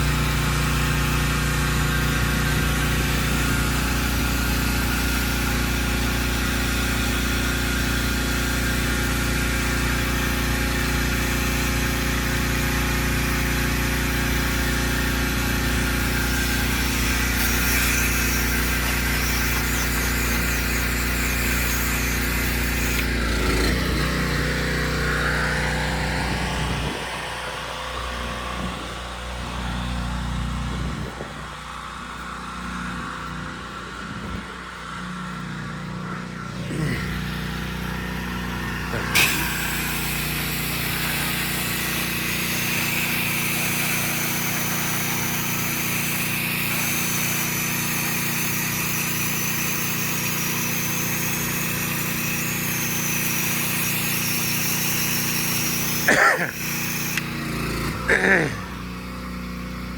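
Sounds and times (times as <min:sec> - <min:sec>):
pump motor running: 0:00.0 - 0:59.9
spray hissing: 0:14.3 - 0:23.6, 0:36.7 - 0:57.5.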